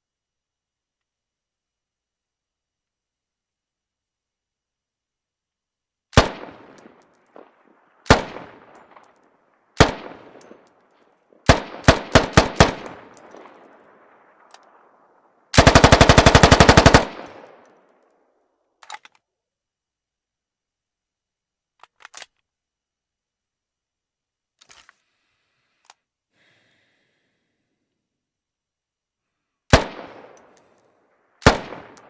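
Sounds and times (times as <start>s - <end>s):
carbine gunshots: 6.2s - 10.6s, 11.4s - 17.7s, 29.7s - 30.7s, 31.4s - 32.0s
automatic gunfire burst: 11.5s - 13.0s, 15.6s - 17.3s.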